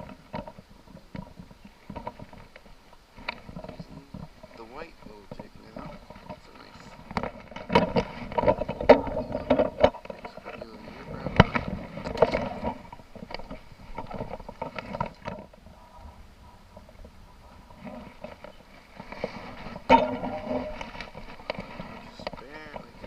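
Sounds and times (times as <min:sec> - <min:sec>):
handling knocks and clicks: 0:00.0 - 0:15.6
rustling handling noises: 0:00.0 - 0:15.6, 0:17.7 - 0:23.0.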